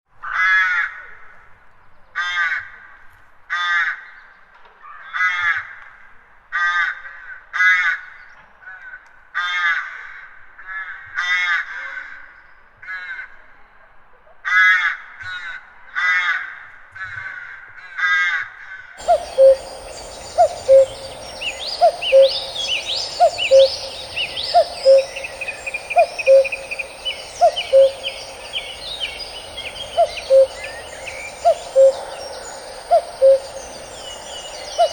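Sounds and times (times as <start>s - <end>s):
bird hooting call: 19.0s - 34.9s
crows cawing: 19.0s - 34.9s
songbirds trilling: 19.0s - 34.9s.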